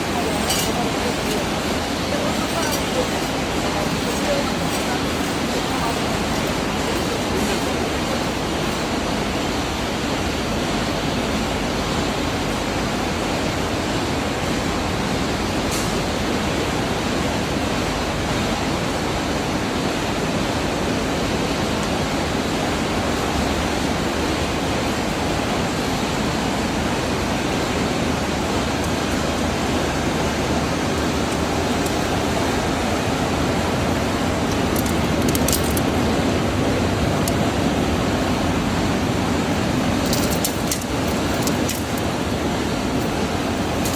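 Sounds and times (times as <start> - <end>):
furnace line rushing noise: 0.0 - 10.5, 28.1 - 43.9.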